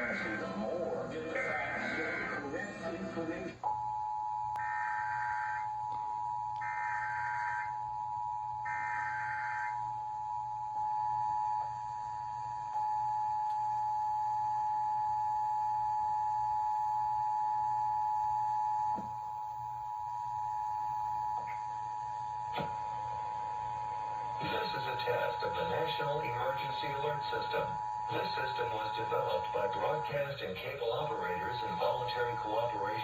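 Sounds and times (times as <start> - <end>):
two-tone alarm: 3.6 - 33.0
warbling digital data tones: 4.6 - 5.8.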